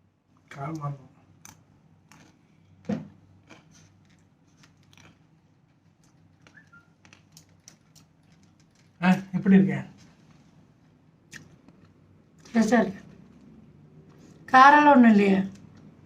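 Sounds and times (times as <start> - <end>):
chewing sounds: 1.4 - 9.0, 11.3 - 14.5.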